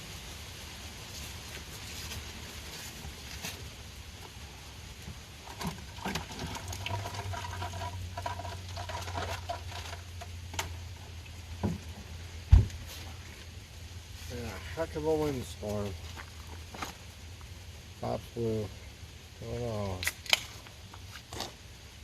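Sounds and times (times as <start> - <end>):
bonfire crackling and popping: 0.4 - 13.8, 19.7 - 21.9
loud low thump: 12.5 - 12.8.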